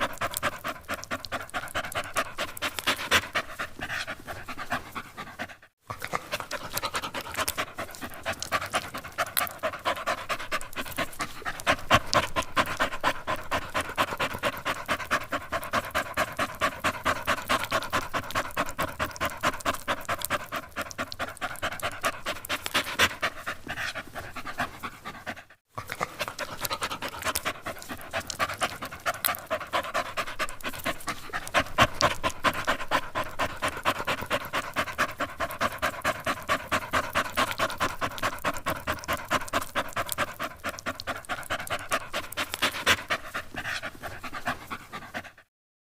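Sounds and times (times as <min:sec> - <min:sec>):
dog panting rapidly: 0:00.0 - 0:45.5.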